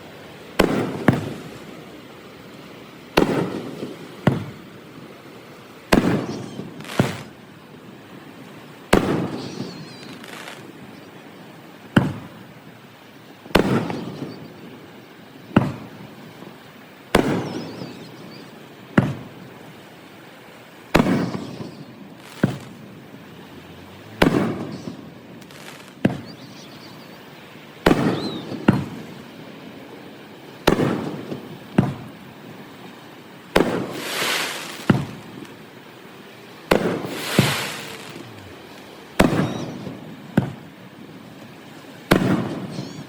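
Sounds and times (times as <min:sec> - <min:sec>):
fireworks bangs with rumbling echo: 0:00.6 - 0:01.5, 0:03.2 - 0:04.6, 0:05.9 - 0:07.4, 0:08.9 - 0:10.7, 0:11.9 - 0:12.4, 0:13.5 - 0:14.5, 0:15.5 - 0:16.0, 0:17.1 - 0:19.4, 0:20.9 - 0:22.9, 0:24.2 - 0:26.8, 0:27.8 - 0:29.2, 0:30.6 - 0:32.2, 0:33.5 - 0:35.5, 0:36.7 - 0:40.7, 0:42.0 - 0:43.0.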